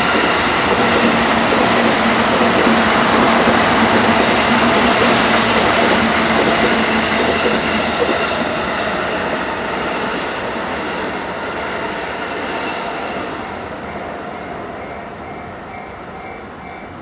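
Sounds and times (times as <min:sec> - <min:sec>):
train passing: 0:00.0 - 0:17.0.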